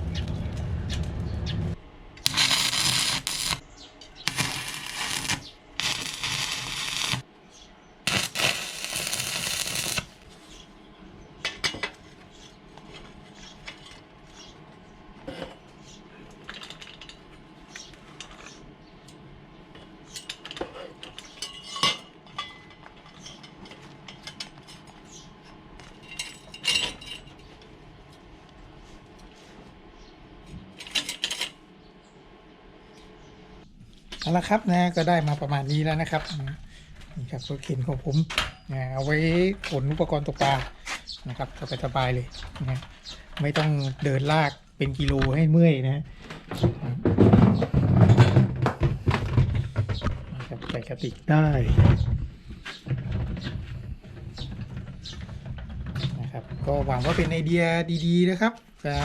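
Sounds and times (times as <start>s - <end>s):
power tool grinding metal: 2.2s - 3.6s, 4.3s - 7.2s, 8.1s - 10.1s.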